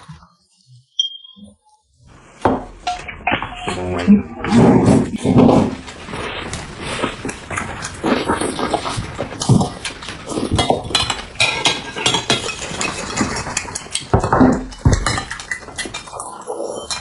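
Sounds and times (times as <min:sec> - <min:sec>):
cutlery and dishes clinking: 0:02.5 - 0:03.9, 0:07.6 - 0:17.0.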